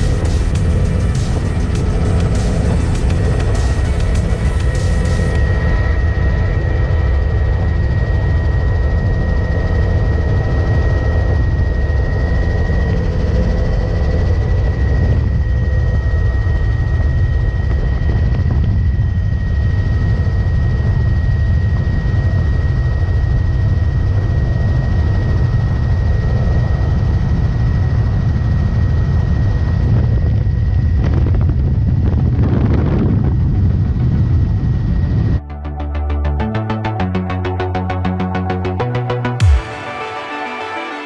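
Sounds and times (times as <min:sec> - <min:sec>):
thin high whine: 0:00.0 - 0:18.0, 0:33.4 - 0:41.0
helicopter rotor and engine rumble: 0:00.0 - 0:38.6
wind buffeting microphone: 0:30.0 - 0:35.4.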